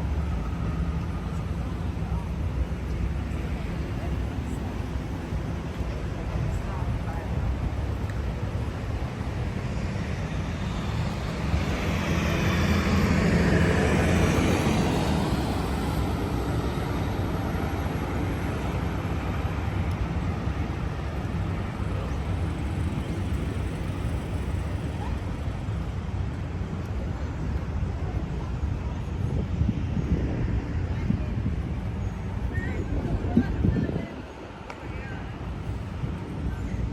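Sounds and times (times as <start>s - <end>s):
traffic rumble: 0.0s - 36.9s
vehicle passing by: 9.3s - 18.2s.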